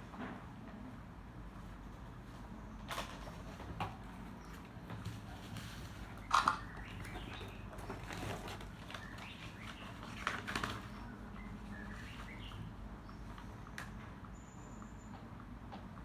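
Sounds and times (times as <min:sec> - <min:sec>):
parcel packaging rustling and crinkling: 0:06.8 - 0:12.6.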